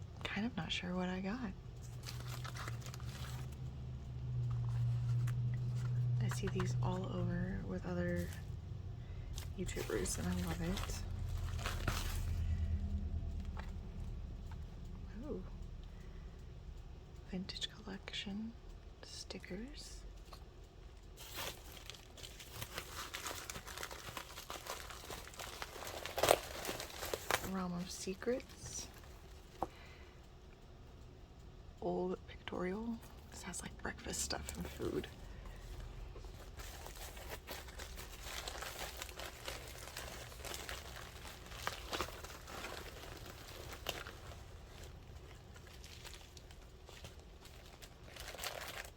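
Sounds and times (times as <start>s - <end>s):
plastic packaging crinkling: 1.8s - 8.5s, 9.3s - 13.7s, 21.2s - 29.7s, 34.1s - 48.9s.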